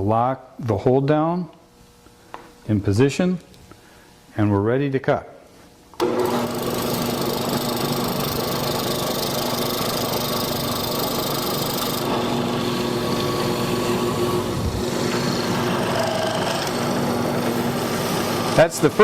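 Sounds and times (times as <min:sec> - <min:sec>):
chisel cutting wood: 0:06.0 - 0:19.0
mortising machine motor running: 0:06.0 - 0:19.0.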